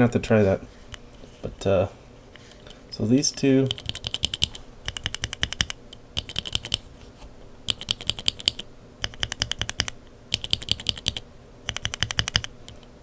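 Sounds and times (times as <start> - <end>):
mechanical keyboard switches clicking: 3.7 - 6.8, 7.7 - 12.9.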